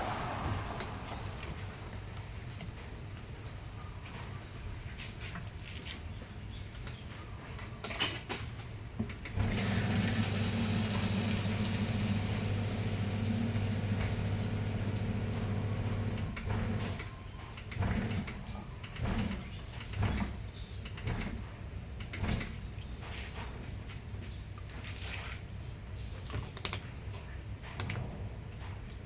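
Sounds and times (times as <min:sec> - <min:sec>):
motor humming: 0:09.4 - 0:17.0.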